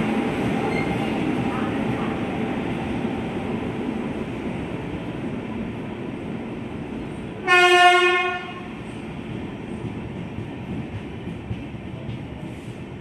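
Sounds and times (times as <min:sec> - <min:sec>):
train rumbling: 0:00.0 - 0:13.0
locomotive horn blast: 0:07.4 - 0:08.7.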